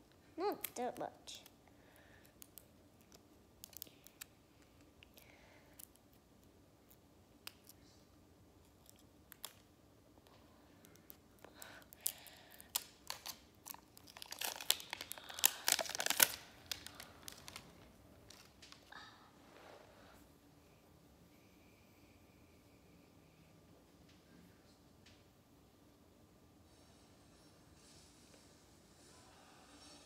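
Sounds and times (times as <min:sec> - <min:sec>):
plastic packaging tearing and crinkling: 0:12.0 - 0:18.8.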